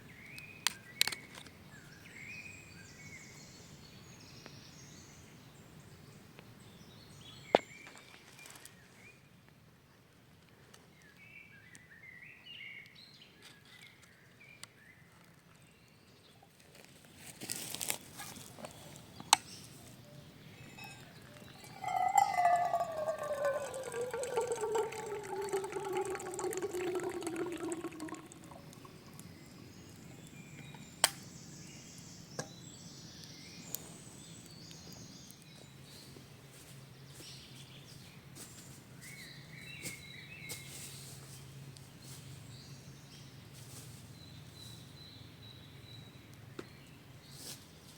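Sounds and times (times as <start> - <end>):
faint bird chirps: 18.8 - 31.0
liquid pouring: 20.8 - 29.8.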